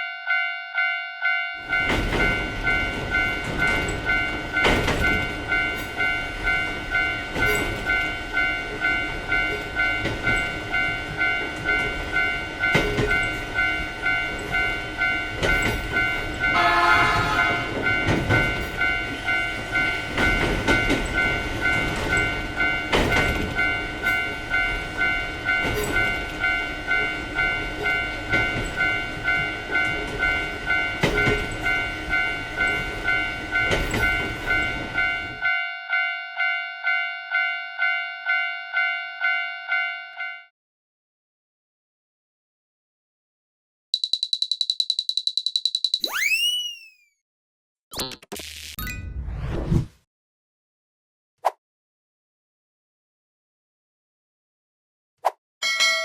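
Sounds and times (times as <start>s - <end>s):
railroad crossing bell ringing: 0.0s - 40.5s, 55.6s - 56.0s
train rumble and wheel clatter: 1.6s - 35.4s.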